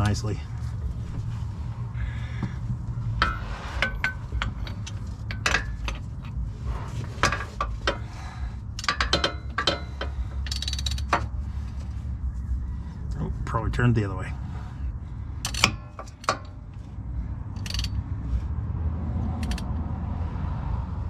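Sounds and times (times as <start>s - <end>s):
metal clinks: 7.2s - 11.3s
ratchet wrench clicking: 7.3s - 11.3s, 15.4s - 16.6s, 17.5s - 18.0s, 19.4s - 19.8s.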